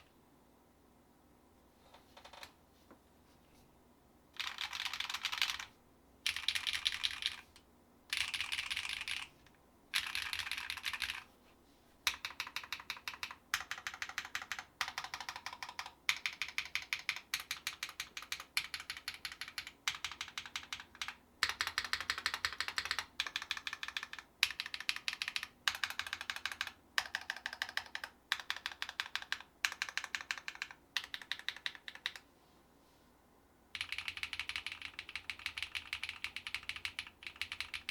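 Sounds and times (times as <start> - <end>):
mechanical keyboard typing: 2.2 - 2.5, 4.4 - 5.7, 6.3 - 7.5, 8.1 - 9.3, 10.0 - 11.2, 12.1 - 32.2, 33.7 - 37.9.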